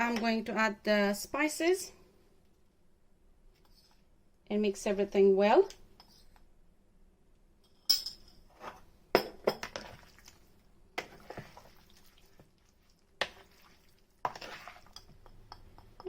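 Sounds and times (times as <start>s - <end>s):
kitchenware clinking: 7.8s - 8.5s.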